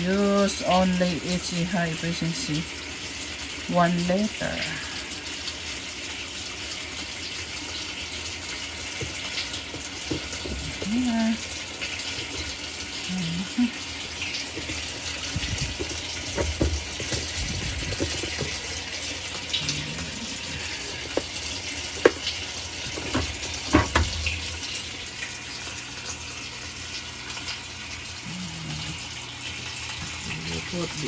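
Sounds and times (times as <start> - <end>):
water filling washing machine: 0.0 - 31.0
sharp clicks and knocks: 14.6 - 18.7, 22.0 - 24.5.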